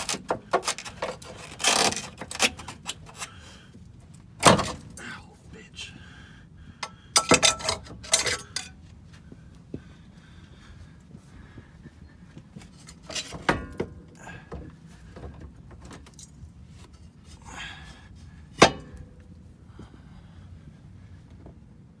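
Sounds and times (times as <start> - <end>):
metal tools clanking: 0.0 - 3.3, 7.2 - 8.8, 12.8 - 13.9.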